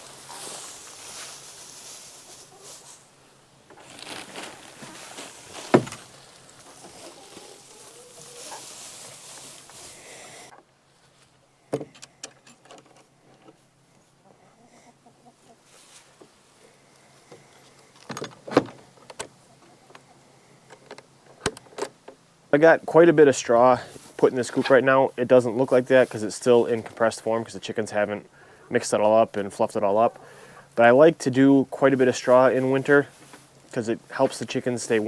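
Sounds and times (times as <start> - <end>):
dry straw rustling: 0.0 - 11.4, 15.4 - 18.0, 22.6 - 35.0.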